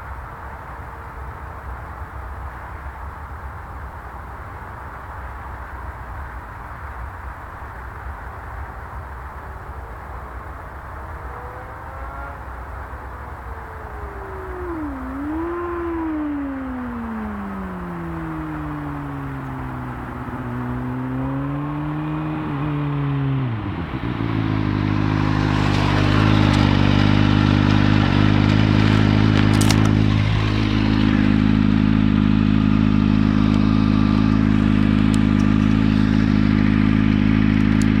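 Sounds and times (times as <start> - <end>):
motorcycle engine running: 9.0 - 38.0.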